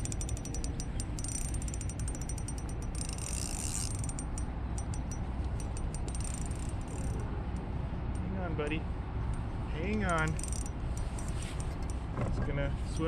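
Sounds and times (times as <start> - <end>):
fishing reel drag clicking: 0.0 - 7.2, 9.9 - 12.0
low wind rumble: 0.0 - 13.0.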